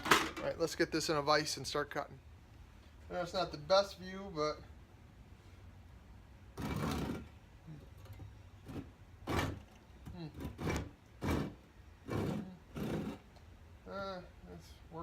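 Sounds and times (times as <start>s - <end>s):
hand saw rasping through wood: 10.4s - 13.3s.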